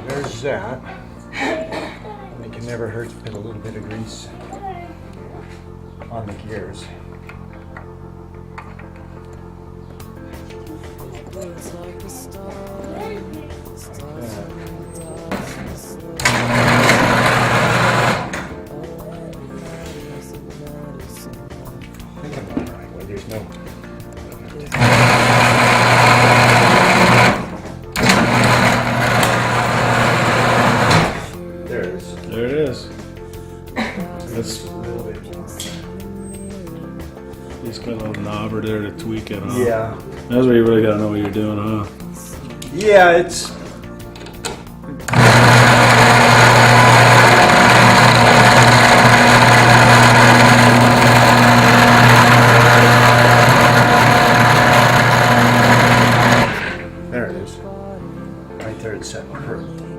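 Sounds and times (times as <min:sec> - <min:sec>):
garage door opener motor running: 0:15.2 - 0:18.7, 0:24.6 - 0:31.4, 0:45.0 - 0:56.9.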